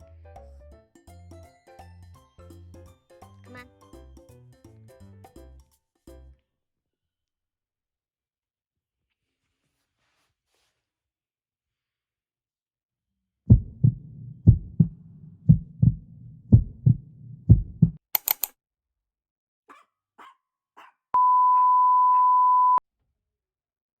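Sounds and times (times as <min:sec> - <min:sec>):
heartbeat thumps: 0:13.5 - 0:18.0
sharp clicks and ticks: 0:18.0 - 0:18.5
steady high beep: 0:21.2 - 0:22.8.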